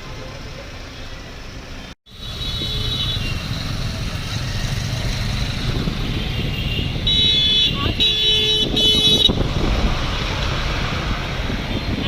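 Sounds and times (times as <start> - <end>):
traffic engine rumble: 0.0 - 12.0.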